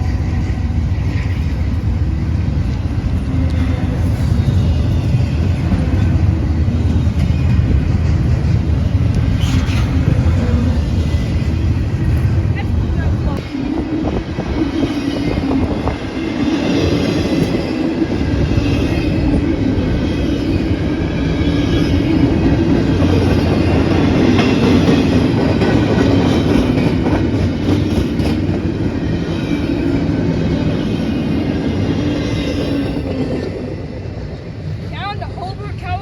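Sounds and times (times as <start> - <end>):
freight train rumbling past: 0.0 - 36.0.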